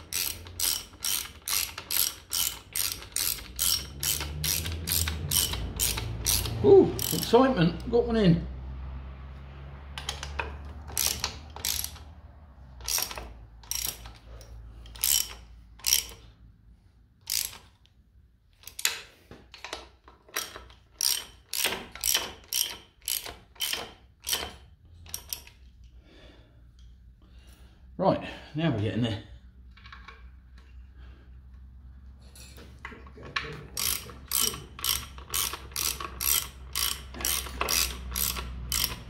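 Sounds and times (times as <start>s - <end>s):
ratchet wrench clicking: 0.0s - 7.6s, 10.0s - 16.4s, 17.2s - 26.0s, 33.7s - 39.0s.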